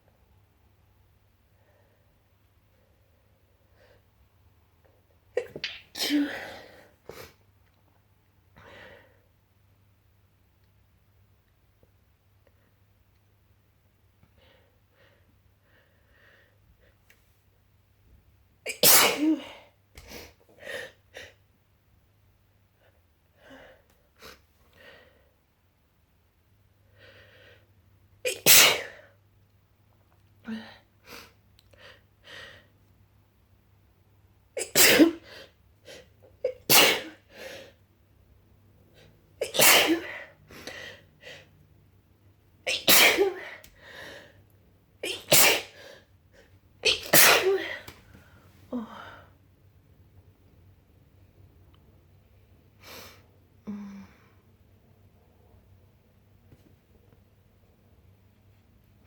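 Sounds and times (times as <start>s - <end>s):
person sneezing: 5.4s - 7.4s, 18.7s - 19.7s, 28.3s - 29.1s, 34.6s - 35.4s, 36.5s - 37.3s, 39.4s - 40.3s, 42.7s - 43.6s, 45.0s - 45.9s, 46.9s - 48.0s
breaths and gasps: 43.7s - 44.5s.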